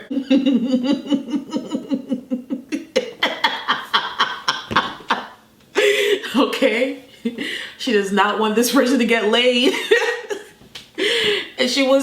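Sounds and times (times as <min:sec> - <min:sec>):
person laughing hard: 0:00.0 - 0:06.2.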